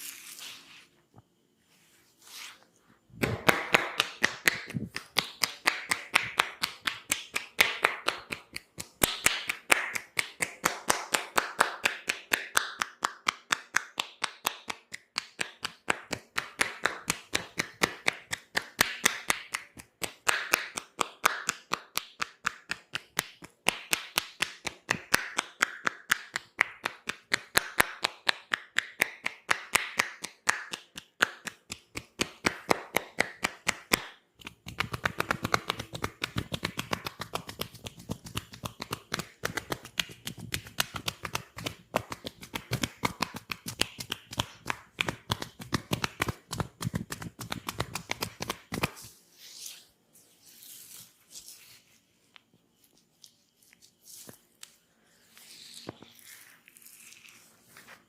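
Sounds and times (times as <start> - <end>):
massage percussion tapping: 3.2 - 49.0.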